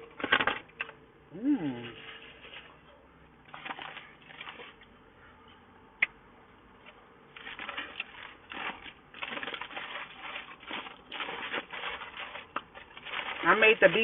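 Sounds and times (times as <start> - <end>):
person chewing: 7.4 - 13.4.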